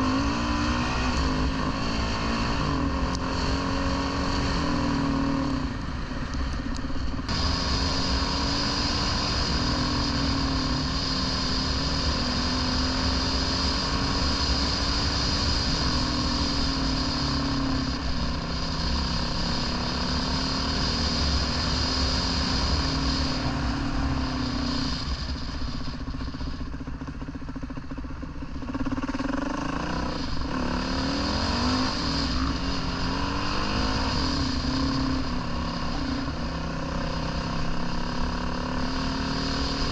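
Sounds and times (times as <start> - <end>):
dirt bike engine revving: 0.0 - 6.1, 7.2 - 26.5, 28.6 - 39.9.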